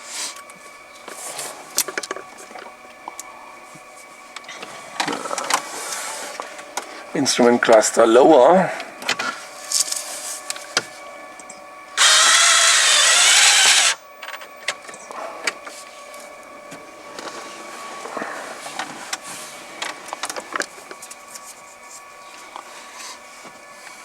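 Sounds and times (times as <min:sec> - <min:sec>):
power drill driving screw: 0:12.0 - 0:14.0.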